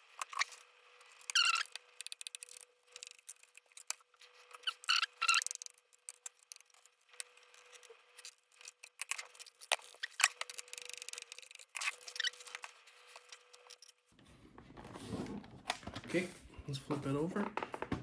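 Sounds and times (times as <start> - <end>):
screwdriver clicking on screws: 0.2 - 13.9
metal tool squeaking on screw heads: 0.2 - 14.0.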